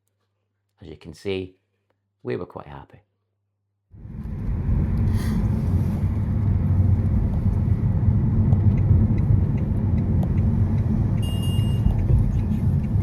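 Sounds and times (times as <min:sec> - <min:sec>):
moving car rumble: 0:03.9 - 0:13.0.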